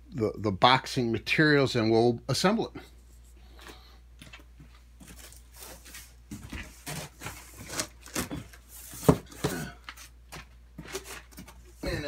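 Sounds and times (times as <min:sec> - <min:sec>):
cardboard scraping and rustling: 0:05.0 - 0:12.0.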